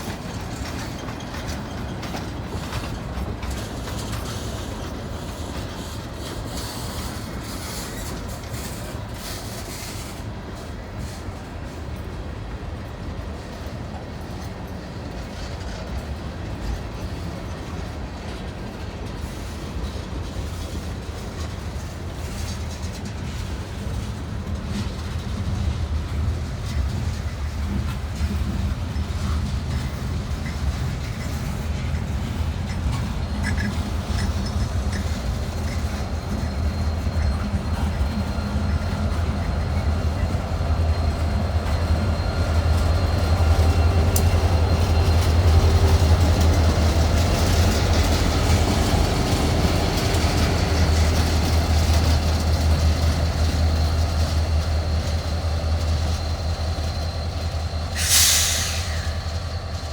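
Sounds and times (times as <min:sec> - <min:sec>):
diesel locomotive rumble: 0:00.0 - 0:59.9
train wheels clacking over rails: 0:00.0 - 0:59.9.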